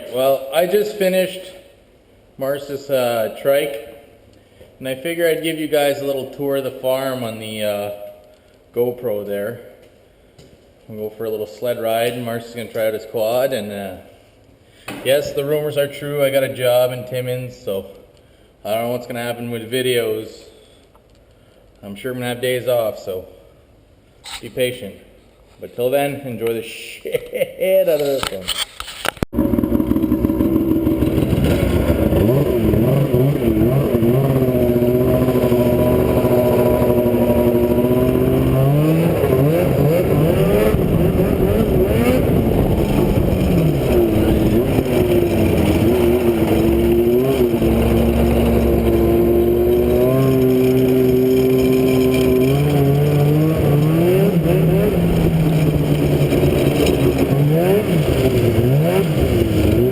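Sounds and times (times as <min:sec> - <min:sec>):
small vehicle engine revving: 0:29.3 - 0:59.9.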